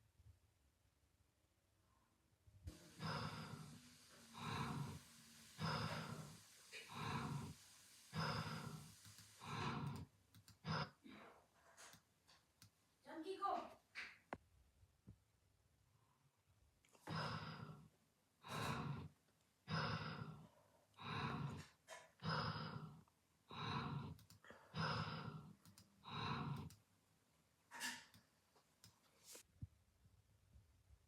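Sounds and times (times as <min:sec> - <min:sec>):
person snoring: 0:02.7 - 0:11.0, 0:17.0 - 0:26.8.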